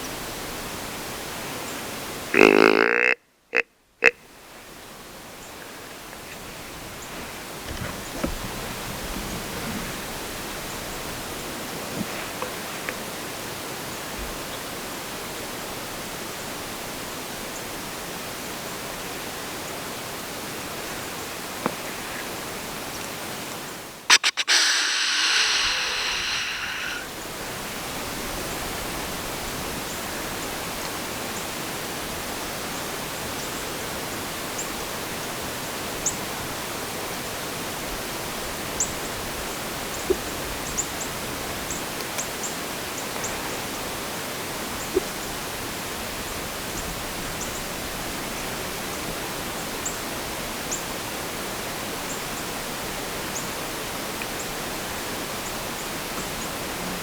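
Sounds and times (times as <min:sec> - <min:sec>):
steady hiss: 0:04.4 - 0:57.0
sharp clicks: 0:24.1 - 0:27.0.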